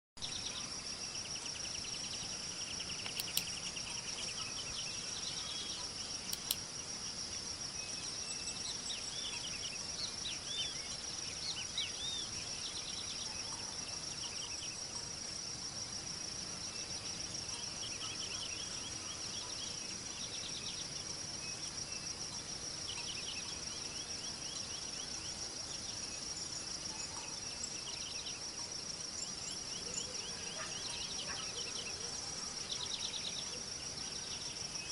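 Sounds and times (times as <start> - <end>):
insects chirring: 0.2 - 34.9
sharp clicks: 3.0 - 3.6, 6.3 - 6.6.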